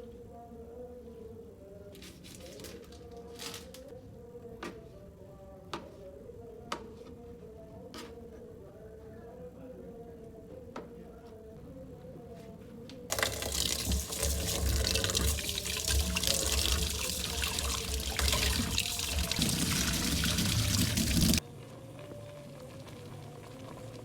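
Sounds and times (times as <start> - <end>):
water pouring: 13.1 - 21.4.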